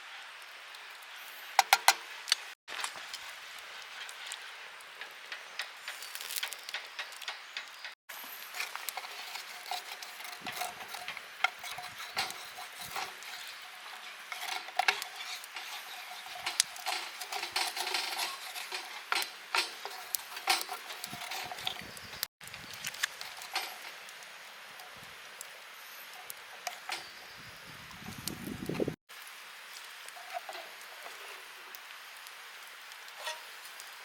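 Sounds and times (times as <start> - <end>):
metal utensil clinking on cookware: 8.6 - 21.9.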